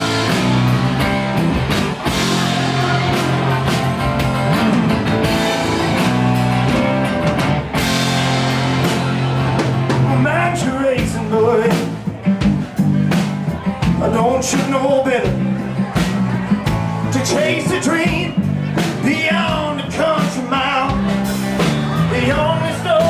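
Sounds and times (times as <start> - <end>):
drum kit beat: 0.0 - 23.0
guitars holding chords: 0.0 - 23.0.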